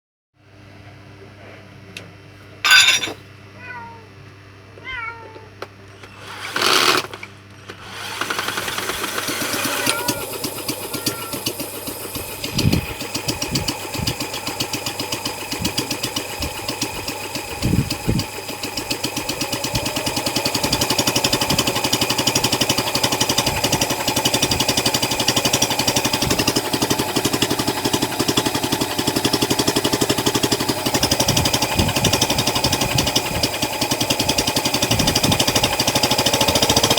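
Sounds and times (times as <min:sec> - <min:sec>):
small engine running: 0:06.0 - 0:36.9.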